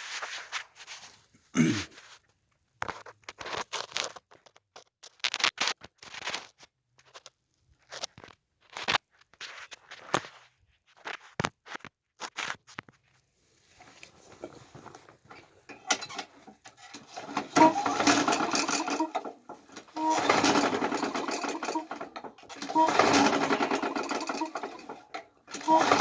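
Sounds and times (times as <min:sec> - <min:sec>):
lawnmower engine cranking: 0:13.8 - 0:26.0
recoil starter pulls: 0:13.8 - 0:26.0.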